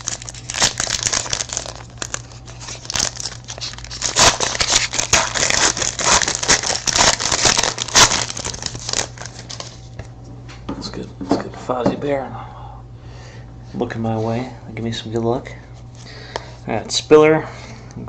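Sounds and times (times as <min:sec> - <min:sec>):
card pack wrapper crinkling: 0:00.0 - 0:10.0.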